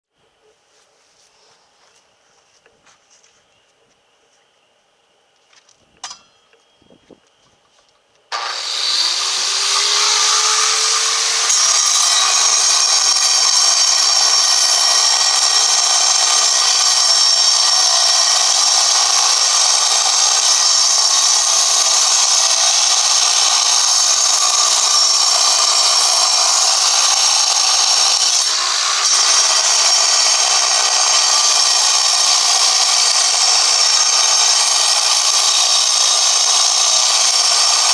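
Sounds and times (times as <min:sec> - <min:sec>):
angle grinder grinding stone: 0:08.4 - 0:37.9.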